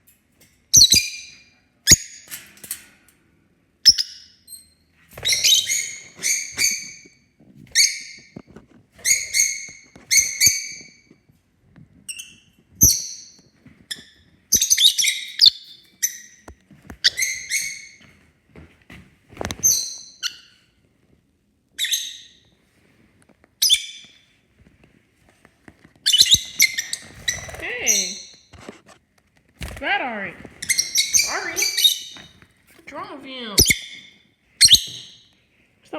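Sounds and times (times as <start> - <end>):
parrots calling harshly: 30.6 - 32.3.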